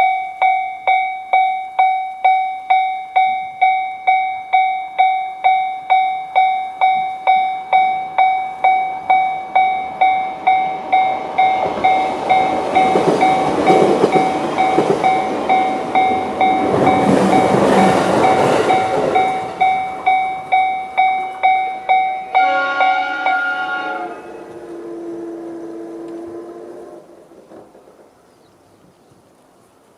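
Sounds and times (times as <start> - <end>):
level crossing electronic bell: 0.0 - 23.7
electric train rumbling: 0.0 - 28.7.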